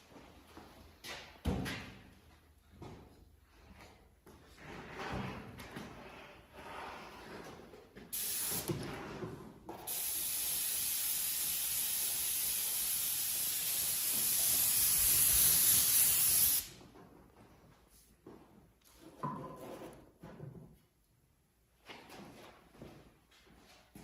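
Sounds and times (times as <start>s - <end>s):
airbrush hissing: 8.2s - 8.7s, 9.9s - 16.7s.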